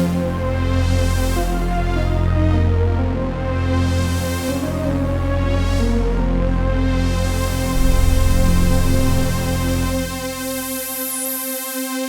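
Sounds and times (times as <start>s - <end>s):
synthesizer held chords: 1.3s - 11.6s
steady low bass note: 6.1s - 11.2s.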